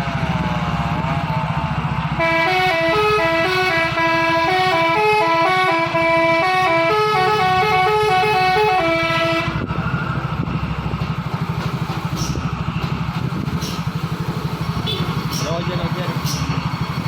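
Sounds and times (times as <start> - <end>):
diesel engine running: 0.0 - 17.0
truck horn melody: 2.2 - 9.7, 14.8 - 15.3.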